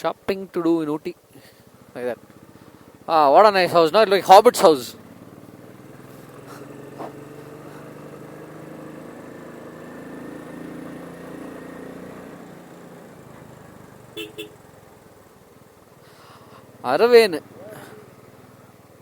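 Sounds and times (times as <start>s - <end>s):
motorcycle engine running: 0.0s - 19.0s
engine blips: 13.3s - 14.8s.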